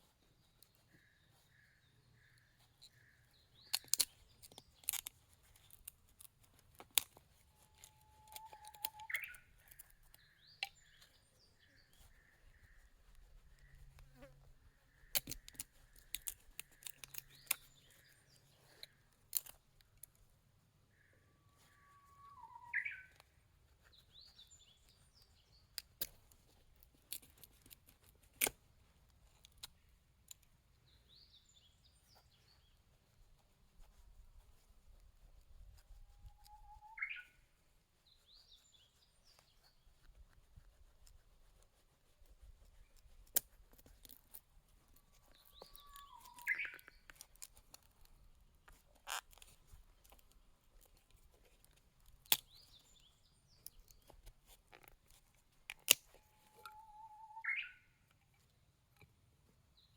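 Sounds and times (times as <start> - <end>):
short bird calls: 7.5 - 18.9, 20.9 - 23.2, 36.3 - 37.4, 45.3 - 47.1, 56.1 - 58.0.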